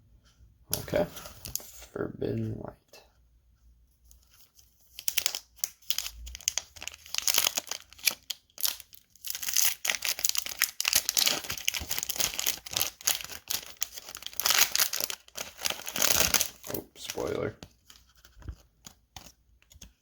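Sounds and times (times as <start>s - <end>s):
foil wrapper crinkling and tearing: 4.9s - 19.3s.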